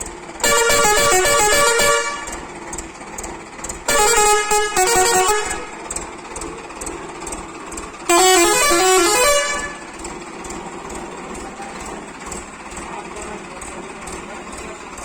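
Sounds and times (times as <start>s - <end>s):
musical air horn: 0.4s - 2.4s, 3.9s - 5.8s, 8.1s - 10.0s.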